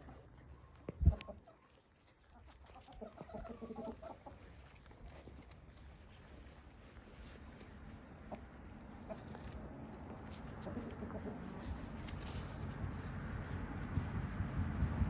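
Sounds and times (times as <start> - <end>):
chickens clucking: 2.6 - 4.5, 8.0 - 9.5, 10.4 - 11.8.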